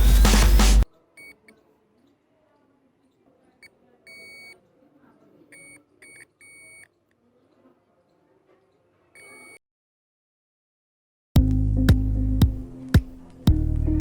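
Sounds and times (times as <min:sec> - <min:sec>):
high electronic beeps: 0:00.0 - 0:01.4.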